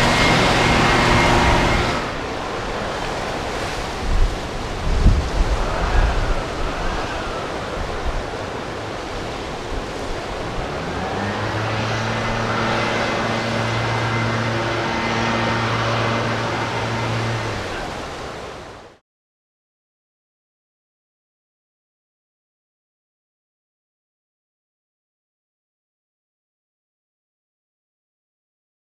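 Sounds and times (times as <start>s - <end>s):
steady low hum: 0.0s - 19.0s
storm wind: 0.0s - 19.0s
surf: 0.0s - 19.0s.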